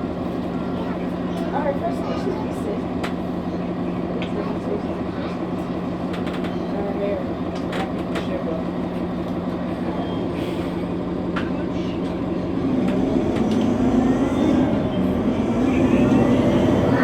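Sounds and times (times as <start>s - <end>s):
bus engine drone: 0.0s - 17.0s.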